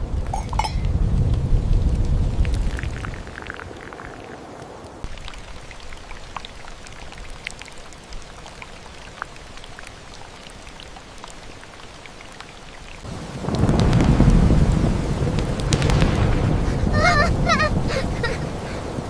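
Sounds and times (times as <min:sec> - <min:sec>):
low rumble of thunder: 0:00.0 - 0:03.2, 0:13.1 - 0:19.0
steady rain: 0:00.0 - 0:19.0
raindrops ticking: 0:00.1 - 0:19.0.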